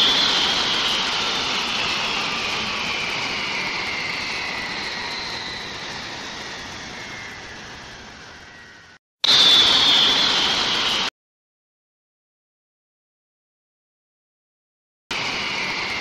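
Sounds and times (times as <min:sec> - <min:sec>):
jet-like rushing whistle: 0:00.0 - 0:11.1, 0:15.1 - 0:16.0.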